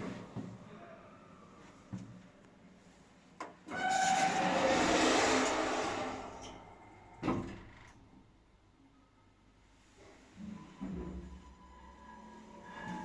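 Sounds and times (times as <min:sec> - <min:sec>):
loud rushing noise with squeal: 0:03.8 - 0:06.5.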